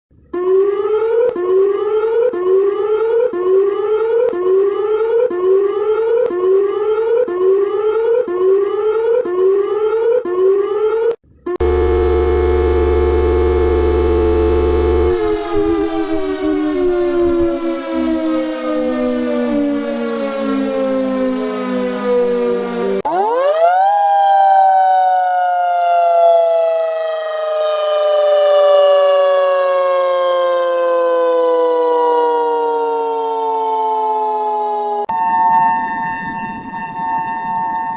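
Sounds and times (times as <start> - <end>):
many-toned siren winding down: 0.1 - 37.9
siren winding up and falling: 0.1 - 37.9
low buzz: 11.3 - 17.7.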